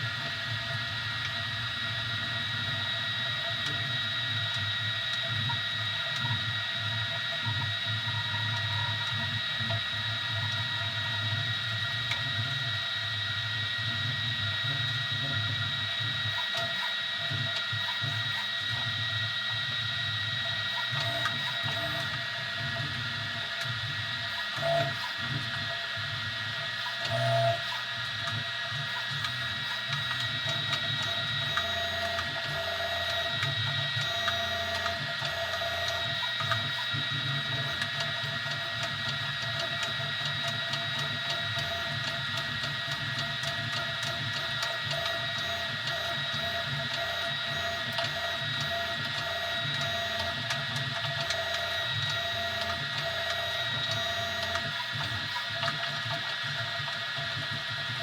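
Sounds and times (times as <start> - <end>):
stepper motors whining: 19.8 - 22.2, 26.6 - 56.8.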